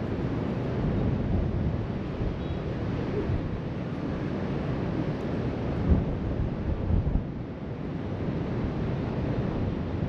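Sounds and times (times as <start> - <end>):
wind buffeting microphone: 5.5 - 7.4.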